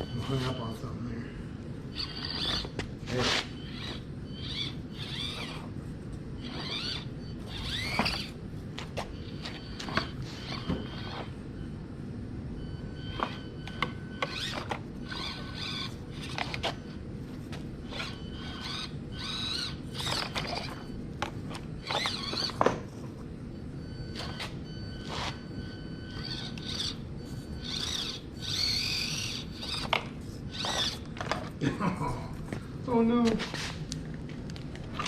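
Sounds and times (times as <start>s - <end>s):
small electric motor whining: 1.9s - 11.5s, 12.9s - 22.7s, 24.0s - 31.5s.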